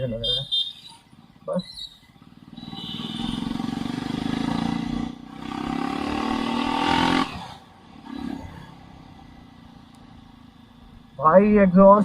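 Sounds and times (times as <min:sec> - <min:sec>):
motorcycle engine accelerating: 0:02.2 - 0:10.5.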